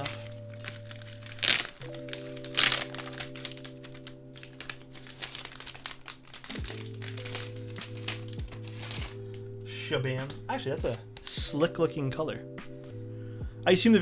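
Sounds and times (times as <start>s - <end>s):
packaging crinkling and rustling: 0.0s - 9.4s.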